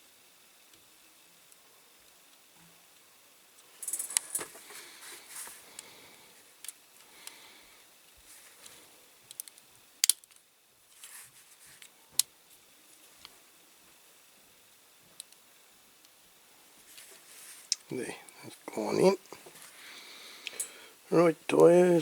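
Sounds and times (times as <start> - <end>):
toy car parts rustling and scraping: 3.8 - 5.6, 10.9 - 11.9, 16.9 - 17.7
sharp clicks of parts: 9.3 - 10.4.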